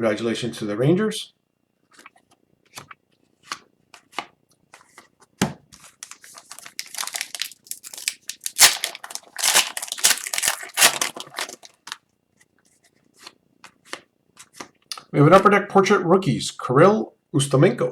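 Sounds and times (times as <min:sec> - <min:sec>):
wrapper tearing and crinkling: 0:05.9 - 0:12.0.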